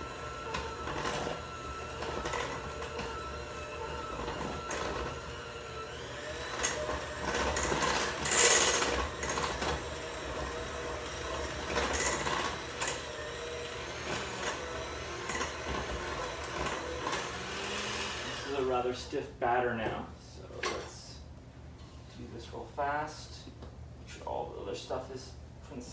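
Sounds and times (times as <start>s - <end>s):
electric mixer motor running: 0.0s - 18.8s.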